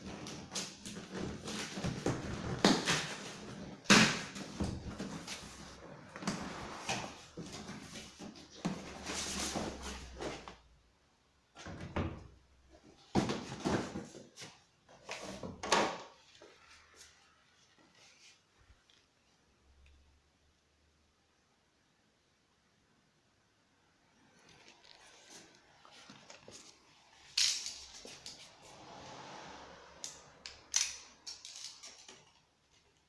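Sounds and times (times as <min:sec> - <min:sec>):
packaging rustling and scraping: 0:00.0 - 0:10.6, 0:24.3 - 0:28.8.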